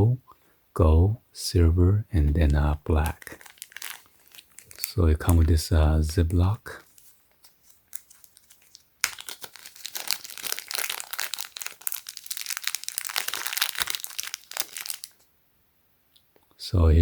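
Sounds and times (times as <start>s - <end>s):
plastic bag crinkling: 2.3s - 15.2s.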